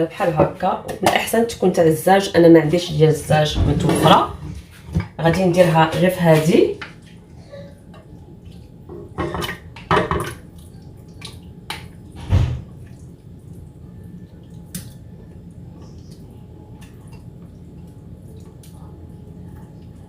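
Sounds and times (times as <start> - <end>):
soft wet plops: 10.2 - 20.0.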